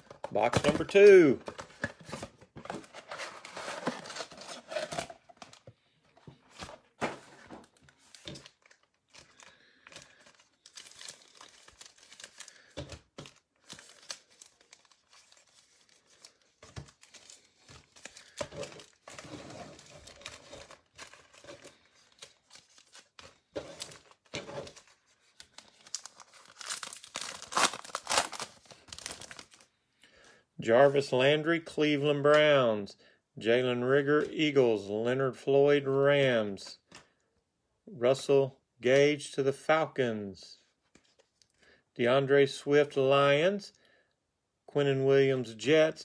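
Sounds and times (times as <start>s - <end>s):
card packs ripping and crinkling: 0.0s - 5.7s, 6.3s - 29.7s.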